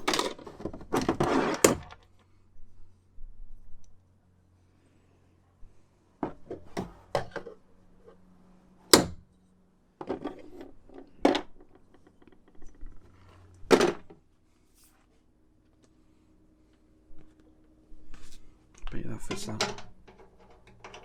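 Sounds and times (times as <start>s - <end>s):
tools knocking and clattering: 8.9s - 9.3s, 19.2s - 21.0s.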